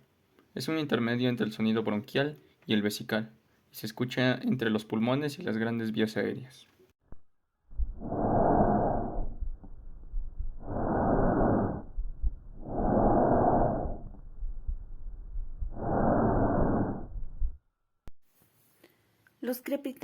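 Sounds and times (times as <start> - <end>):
breathing through a stethoscope: 7.9 - 9.5, 10.5 - 14.2, 15.6 - 17.6.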